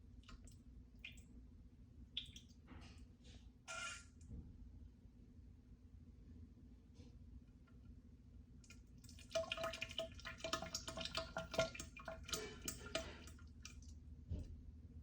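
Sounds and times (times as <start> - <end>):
diarrhea splattering into toilet water: 9.0 - 13.9.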